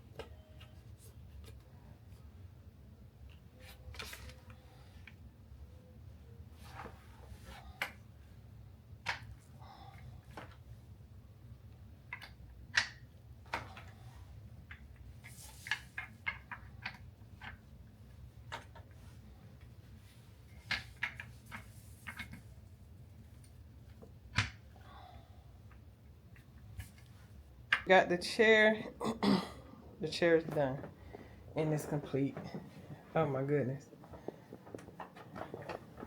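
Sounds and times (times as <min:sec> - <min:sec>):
chair parts clicking and rattling: 0:29.8 - 0:36.0.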